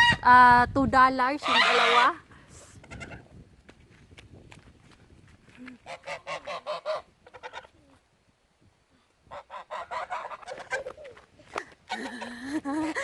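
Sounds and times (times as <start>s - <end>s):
geese honking: 1.4s - 2.2s, 5.8s - 7.7s, 9.3s - 11.2s.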